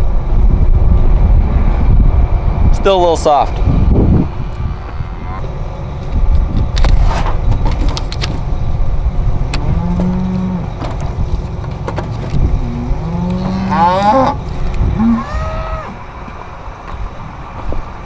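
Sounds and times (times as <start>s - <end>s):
low rumble: 0.0s - 18.0s
cattle mooing: 4.2s - 7.8s, 9.2s - 16.5s
knocks and clatters: 4.9s - 15.1s.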